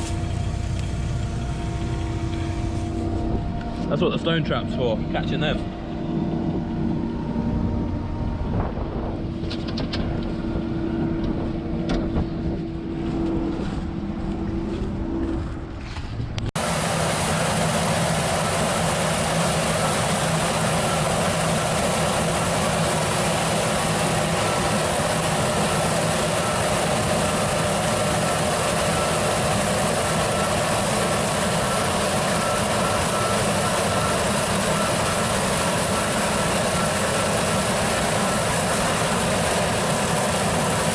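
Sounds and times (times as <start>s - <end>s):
combine harvester running: 0.0s - 40.9s.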